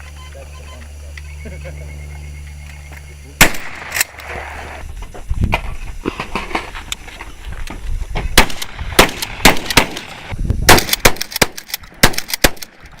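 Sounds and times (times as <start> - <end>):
shotgun reports: 3.4 - 4.1.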